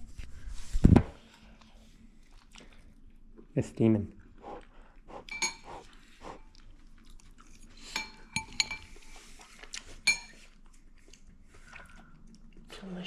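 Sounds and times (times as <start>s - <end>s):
utensils clinking against dishes: 5.3s - 5.9s, 7.6s - 9.1s, 10.0s - 10.4s.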